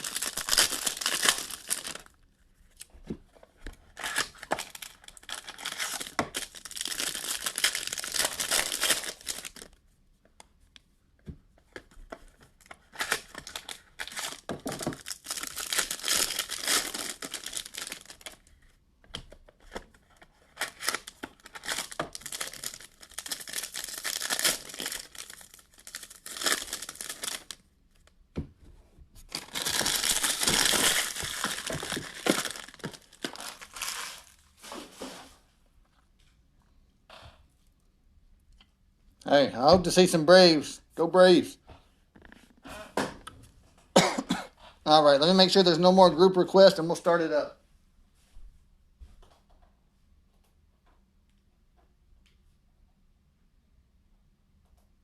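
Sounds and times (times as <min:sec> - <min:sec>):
packaging torn and crumpled: 0:00.0 - 0:02.2, 0:03.9 - 0:09.8, 0:12.6 - 0:18.5, 0:20.4 - 0:27.6, 0:29.3 - 0:34.6.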